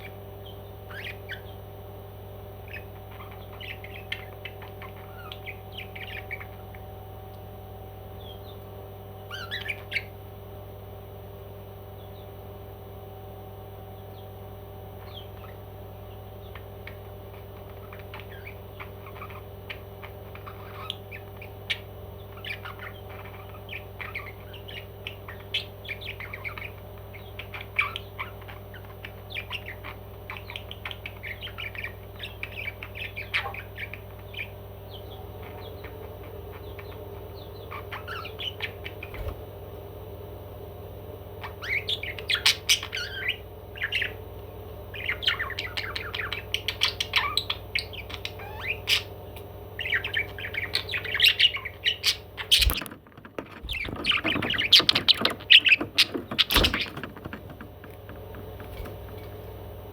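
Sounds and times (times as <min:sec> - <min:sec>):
parrot chirping and squawking: 0:00.9 - 0:01.6, 0:02.6 - 0:06.8, 0:09.3 - 0:10.2, 0:15.0 - 0:15.6, 0:16.4 - 0:39.3, 0:41.4 - 0:44.3, 0:44.9 - 0:49.2, 0:49.8 - 0:59.5.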